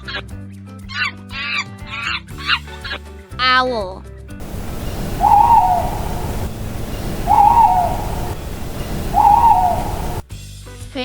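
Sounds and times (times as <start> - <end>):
low background rumble: 4.4 - 10.2
owl hooting: 4.4 - 10.2.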